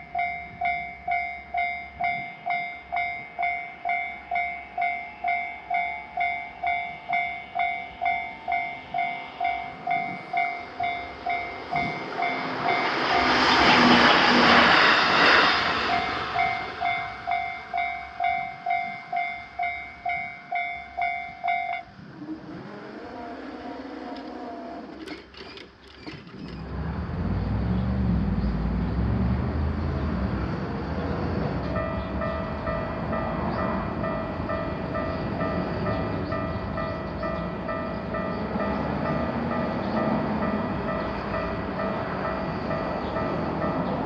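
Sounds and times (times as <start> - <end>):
railroad crossing alarm bell ringing: 0.0 - 13.9, 14.7 - 22.0, 31.6 - 44.0.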